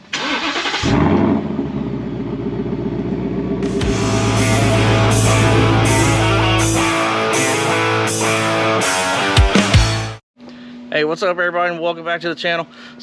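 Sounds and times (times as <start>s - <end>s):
heavy rock guitar music: 3.6s - 10.2s.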